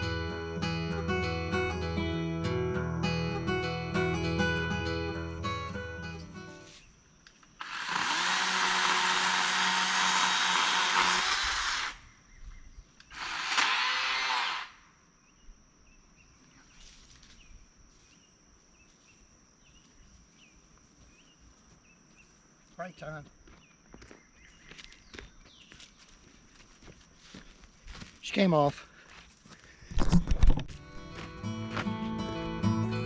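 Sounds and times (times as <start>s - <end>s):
faint insects chirping: 0.0s - 33.0s
electric chainsaw running: 7.6s - 12.0s, 13.1s - 14.8s.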